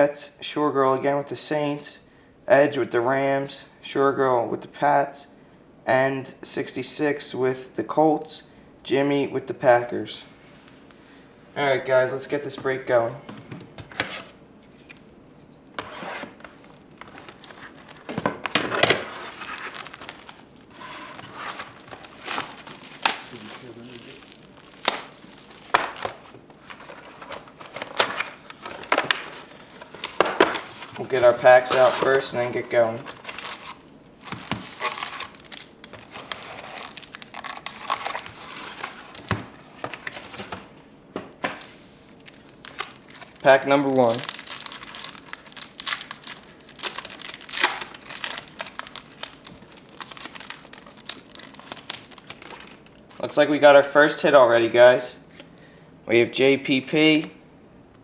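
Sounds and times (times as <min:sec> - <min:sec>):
plastic wrapping crinkling and tearing: 0:15.8 - 0:40.7, 0:41.5 - 0:53.2
cardboard clicks and knocks: 0:34.3 - 0:34.8.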